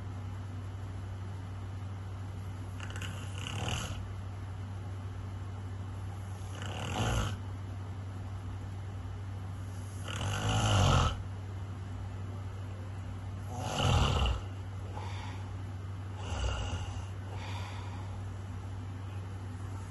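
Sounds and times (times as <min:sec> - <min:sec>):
steady low hum: 0:00.0 - 0:19.9
person snoring: 0:02.8 - 0:04.0, 0:06.3 - 0:07.4, 0:09.8 - 0:11.2, 0:13.4 - 0:15.4, 0:16.1 - 0:18.1.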